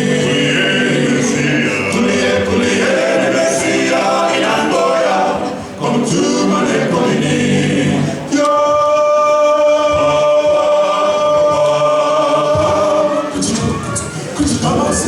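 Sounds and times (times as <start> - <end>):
male a cappella group singing: 0.0 - 15.0.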